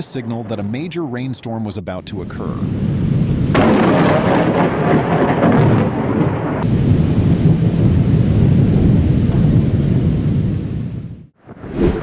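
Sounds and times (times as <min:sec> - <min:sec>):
steady rain: 0:02.0 - 0:05.6, 0:06.6 - 0:11.3
low rumble of thunder: 0:02.4 - 0:11.3.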